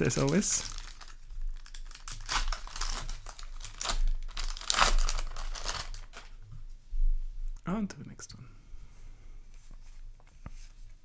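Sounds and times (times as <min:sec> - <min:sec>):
foil wrapper crinkling: 0:00.0 - 0:06.4.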